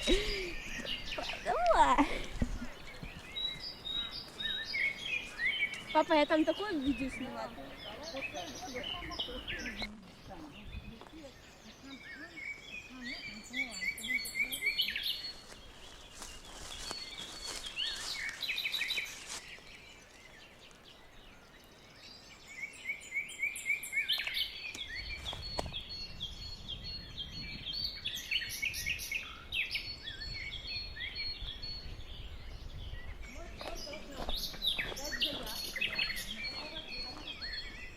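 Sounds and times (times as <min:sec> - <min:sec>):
songbirds chirping: 0:00.0 - 0:37.9.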